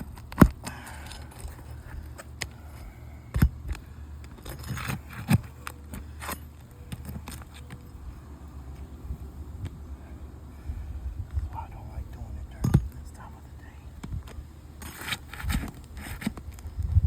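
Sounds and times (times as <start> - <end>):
metal tool scraping on shingles: 14.8 - 16.4.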